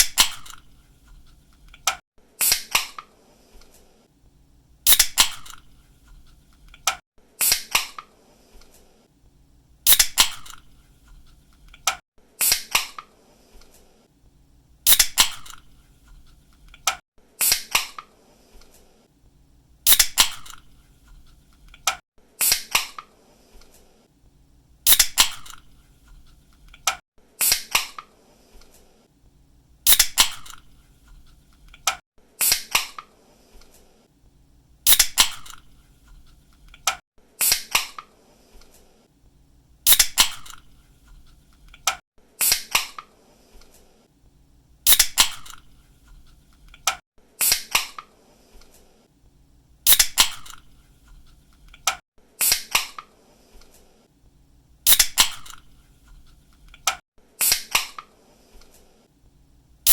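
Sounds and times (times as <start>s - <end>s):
drink can opening with fizz: 4.9s - 5.6s, 9.9s - 10.6s, 19.9s - 20.6s, 29.9s - 30.6s, 34.9s - 35.6s, 39.9s - 40.6s, 44.9s - 45.6s, 49.9s - 50.6s, 54.9s - 55.6s.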